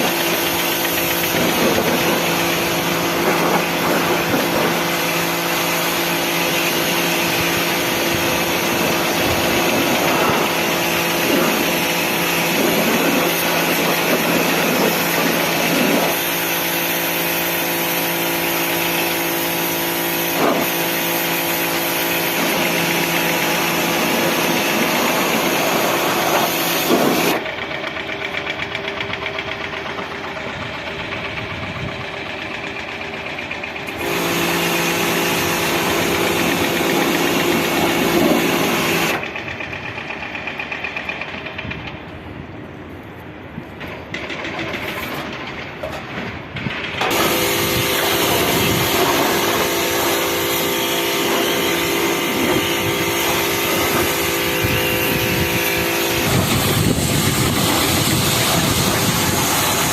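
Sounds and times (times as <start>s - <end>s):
loud machine hiss: 0.0s - 28.3s, 33.9s - 39.4s, 46.9s - 59.9s
machine hum: 0.0s - 59.9s.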